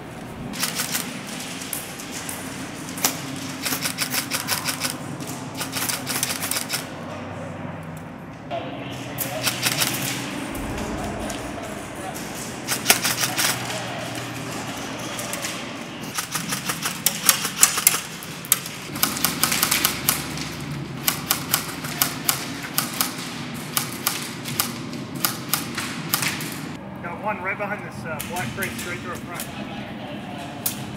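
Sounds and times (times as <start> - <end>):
airsoft guns firing rapid clicks: 0.5 - 2.3, 3.0 - 6.9, 9.4 - 10.2, 12.7 - 14.2, 15.1 - 26.8.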